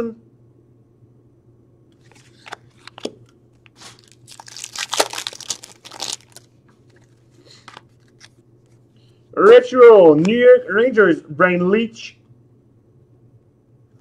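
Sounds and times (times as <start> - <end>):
wrapper crinkling and tearing: 3.7 - 7.2.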